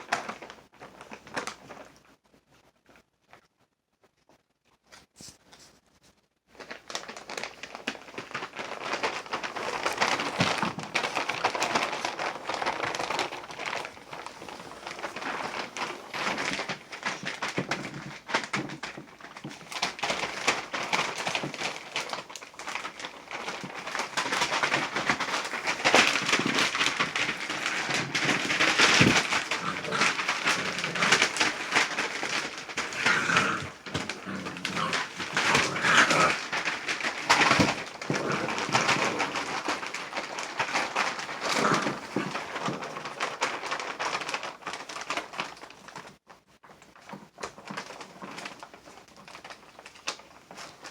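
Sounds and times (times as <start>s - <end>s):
puppies scratching and scuffling: 4.2s - 50.9s.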